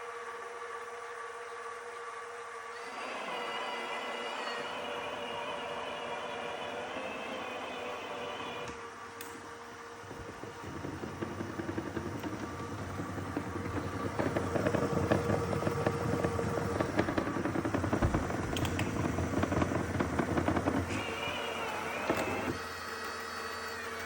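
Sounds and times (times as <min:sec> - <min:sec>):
robot vacuum running: 0:02.7 - 0:24.0
rapid mechanical clicking: 0:10.0 - 0:22.6.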